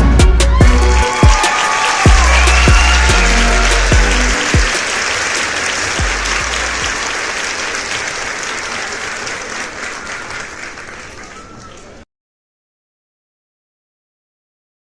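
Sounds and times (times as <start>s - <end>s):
applause: 0.8s - 12.0s
deep bass note: 6.0s - 6.9s.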